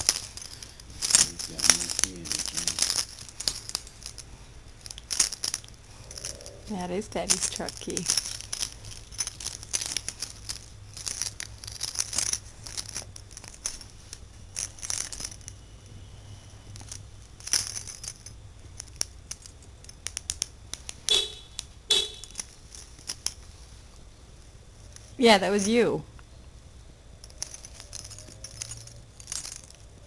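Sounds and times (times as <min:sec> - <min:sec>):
car keys jangling: 0:00.0 - 0:06.4, 0:07.2 - 0:13.9
car horn beeps: 0:21.1 - 0:22.4.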